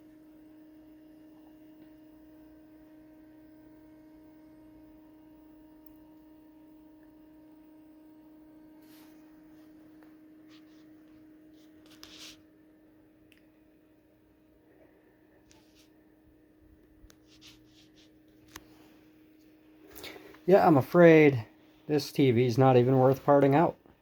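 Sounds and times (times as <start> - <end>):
faint background hum: 0.0 - 24.0
short rustle: 17.2 - 19.1.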